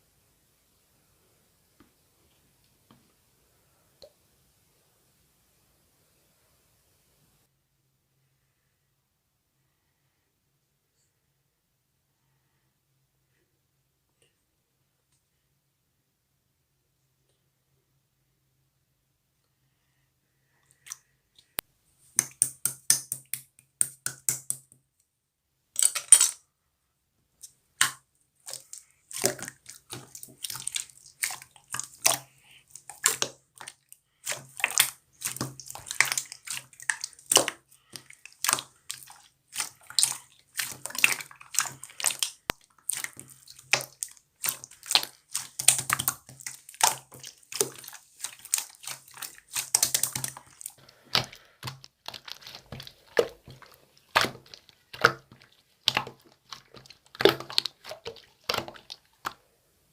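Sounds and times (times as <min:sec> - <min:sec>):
slime squeezed by hand: 0:27.8 - 0:59.4.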